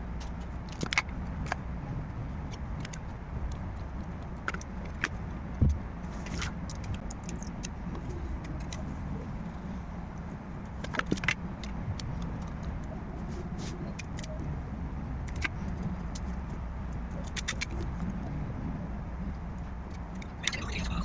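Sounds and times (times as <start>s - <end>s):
steady low rumble: 12.0s - 21.0s.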